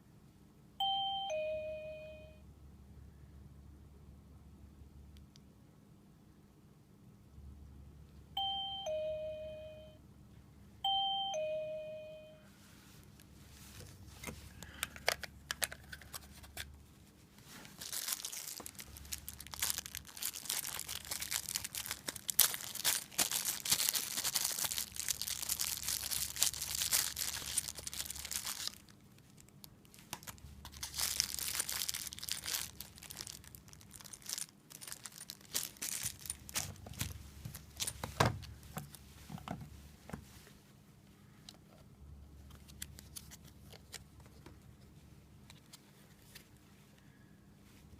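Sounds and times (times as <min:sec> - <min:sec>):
ding-dong door chime: 0:00.8 - 0:02.4, 0:08.4 - 0:10.0, 0:10.8 - 0:12.5
crackling rustling noise: 0:12.6 - 0:40.8.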